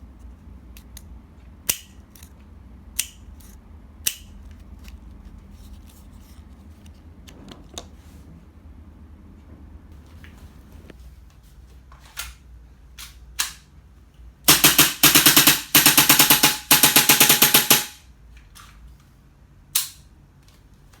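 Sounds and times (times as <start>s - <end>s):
gas pistol firing rapid shots: 14.5s - 18.0s.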